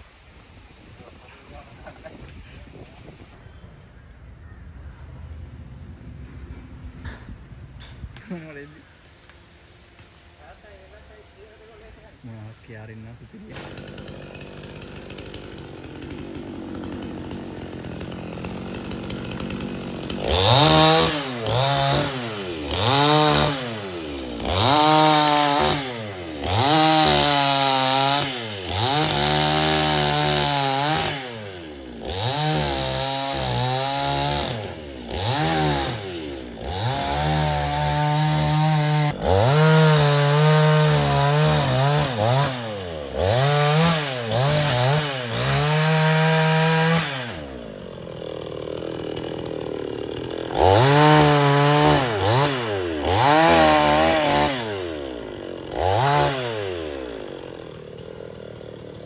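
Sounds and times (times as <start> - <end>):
chainsaw revving: 13.5 - 59.0.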